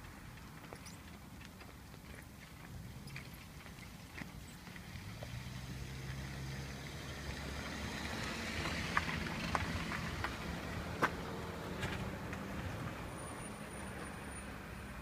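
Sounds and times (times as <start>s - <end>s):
vehicle engine passing: 4.6s - 15.0s.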